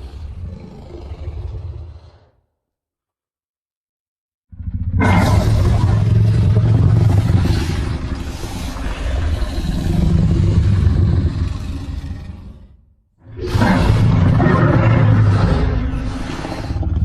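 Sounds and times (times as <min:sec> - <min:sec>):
low rumbling monster sound: 0:00.0 - 0:02.4, 0:04.5 - 0:17.0.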